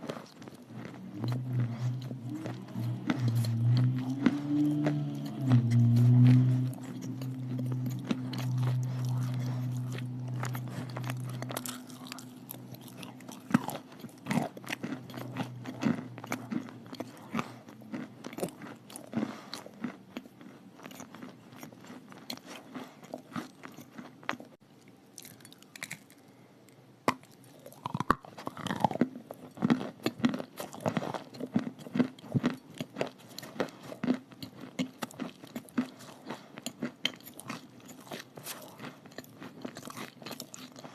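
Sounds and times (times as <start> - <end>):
crunching and chewing chalk: 0.0 - 40.9
low hum: 0.6 - 18.3.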